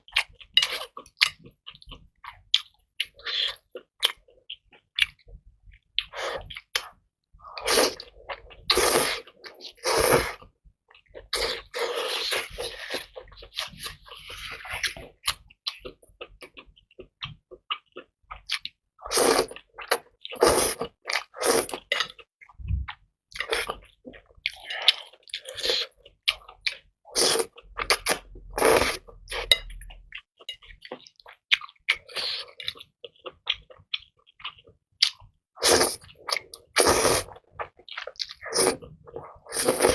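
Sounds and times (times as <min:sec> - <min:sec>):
person chewing and biting: 0:30.9 - 0:39.9
wet mouth sounds: 0:35.0 - 0:37.4, 0:38.1 - 0:39.9.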